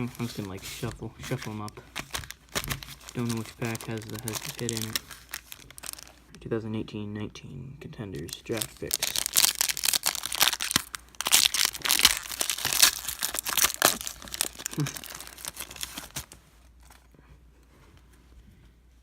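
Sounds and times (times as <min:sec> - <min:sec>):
plastic wrapper tearing and crinkling: 0:00.0 - 0:06.3, 0:08.2 - 0:17.0.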